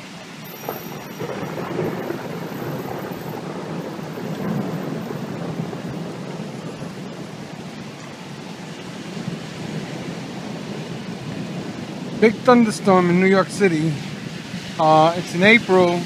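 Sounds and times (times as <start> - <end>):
steady rain: 0.0 - 16.0
thunder rumbling: 0.0 - 16.0.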